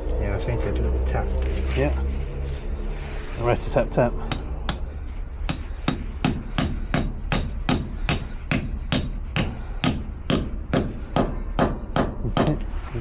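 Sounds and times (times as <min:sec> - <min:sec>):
hammer tapping: 0:04.2 - 0:04.9, 0:05.5 - 0:12.7.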